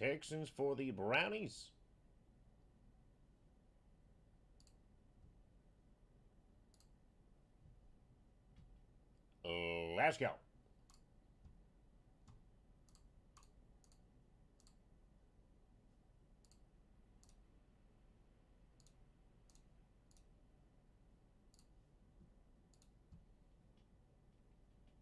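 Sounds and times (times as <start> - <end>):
faint irregular clicks: 4.5 - 5.4, 6.7 - 7.0, 10.8 - 11.6, 12.2 - 14.9, 16.4 - 17.5, 18.7 - 20.4, 21.5 - 24.0.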